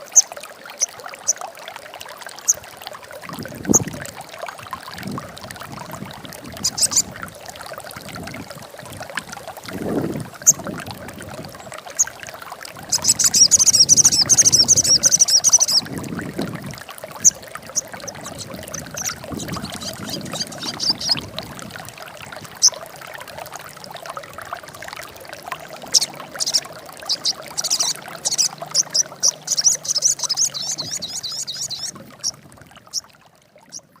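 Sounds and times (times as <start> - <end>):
songbird chattering trills: 12.9 - 15.8, 17.2 - 21.2, 25.9 - 33.0.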